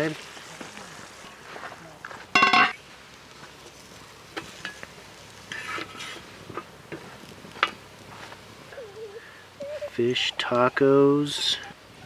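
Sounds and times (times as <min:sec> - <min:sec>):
fish sizzling in butter: 0:00.0 - 0:09.4
utensils clinking on frying pan: 0:02.3 - 0:02.9, 0:04.3 - 0:08.4.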